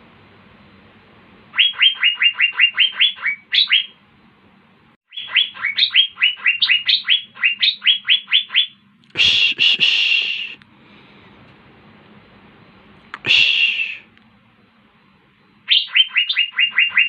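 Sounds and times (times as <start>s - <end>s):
harsh bird call: 1.5s - 4.0s, 5.1s - 10.6s, 13.2s - 14.1s, 15.7s - 17.0s
bird whistling downward notes: 1.6s - 4.0s, 5.1s - 8.8s, 15.7s - 17.0s.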